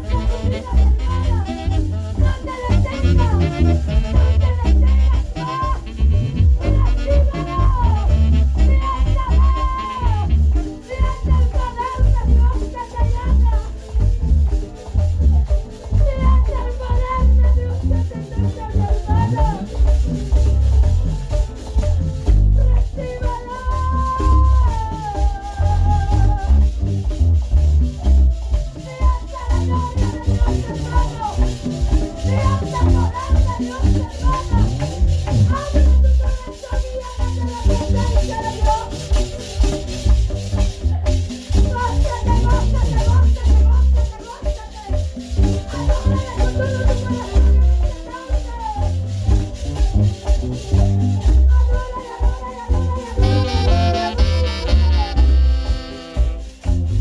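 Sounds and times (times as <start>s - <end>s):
saxophone melody: 0.0s - 12.6s, 13.4s - 57.0s
heavy bass line: 0.0s - 36.4s, 48.8s - 51.9s, 52.7s - 57.0s
busy percussion: 0.0s - 57.0s.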